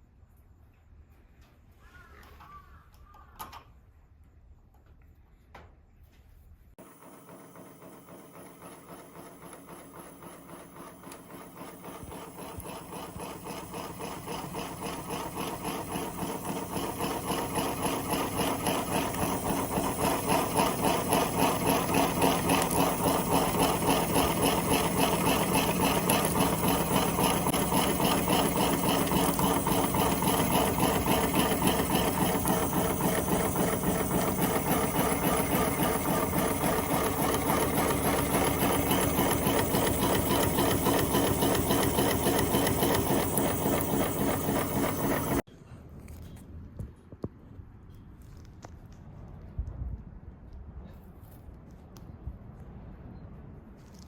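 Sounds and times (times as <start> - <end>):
machine running with rhythmic beat: 6.8 - 45.5.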